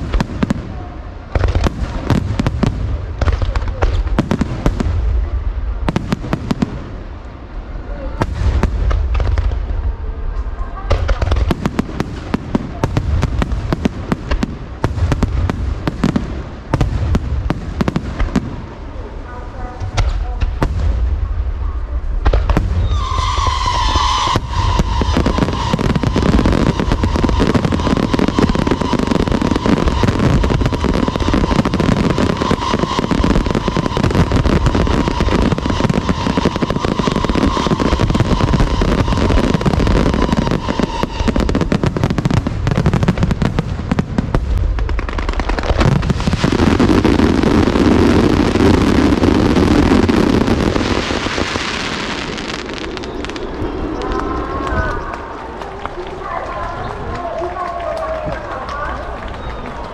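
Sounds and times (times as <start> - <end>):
fireworks crackling and banging: 0.0 - 59.9
high whistle: 22.8 - 28.9.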